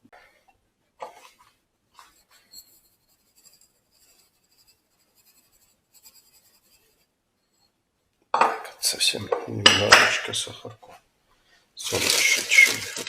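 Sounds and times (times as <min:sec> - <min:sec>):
scratchy rustling: 0:01.1 - 0:07.7, 0:11.8 - 0:13.0.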